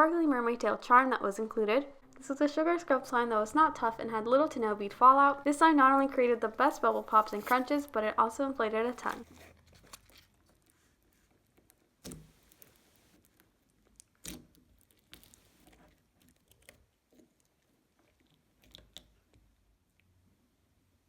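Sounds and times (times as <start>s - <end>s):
slime crunching and popping: 11.4s - 19.4s.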